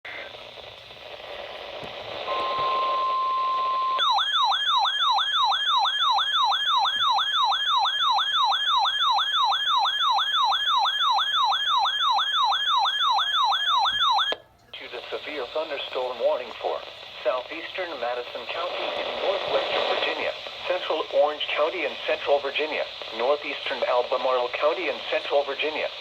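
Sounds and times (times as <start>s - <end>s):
steady single-pitch tone: 2.3s - 5.7s.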